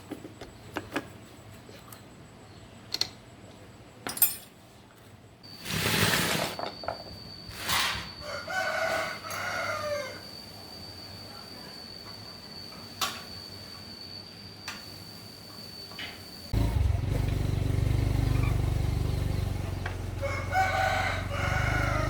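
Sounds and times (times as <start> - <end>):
rooster crowing: 8.2 - 10.4, 20.0 - 22.0.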